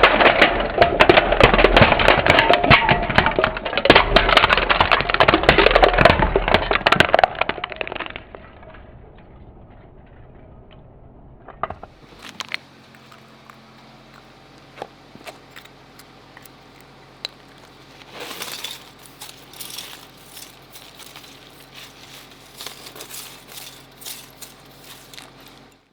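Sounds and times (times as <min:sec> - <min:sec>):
low hum: 0:08.3 - 0:25.9
clicks and crackles: 0:11.6 - 0:25.9.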